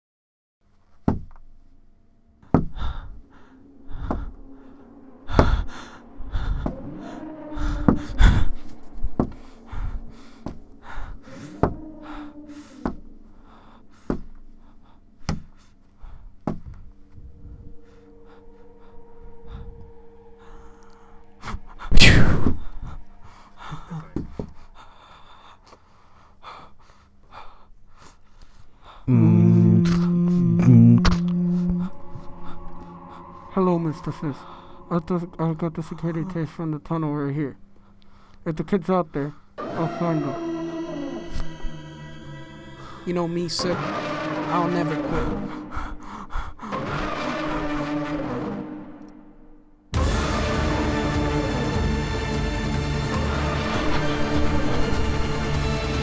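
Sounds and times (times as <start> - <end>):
sharp knocks and thuds: 1.0 - 1.4, 2.6 - 2.8, 16.4 - 16.8
held hum: 2.2 - 24.6, 29.1 - 36.7, 39.6 - 56.0
breathy gasps: 2.5 - 16.3, 17.8 - 35.4, 45.0 - 46.9
short voiced noises: 29.1 - 34.4.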